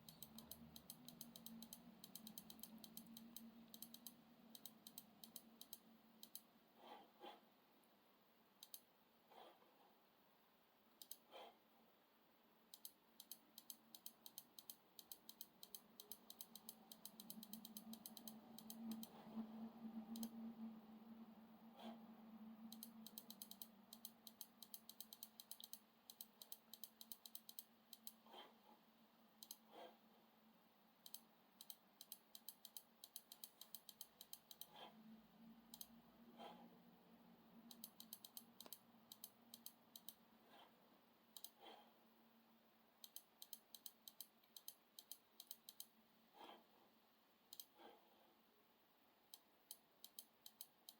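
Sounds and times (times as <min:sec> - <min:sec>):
light clicks of laptop keys: 0:00.0 - 0:06.5, 0:12.7 - 0:20.5, 0:22.6 - 0:28.5, 0:37.7 - 0:40.6
low steady hum: 0:00.0 - 0:50.9.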